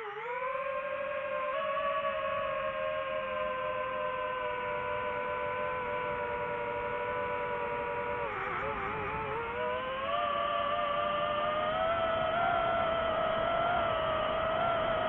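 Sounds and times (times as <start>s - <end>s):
drone propellers whining: 0.0s - 15.0s.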